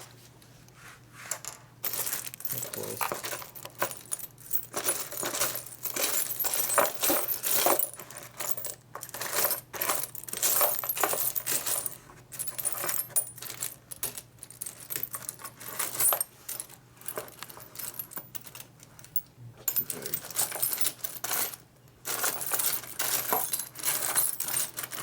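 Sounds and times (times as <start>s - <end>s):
metal washers clinking: 1.4s - 25.0s.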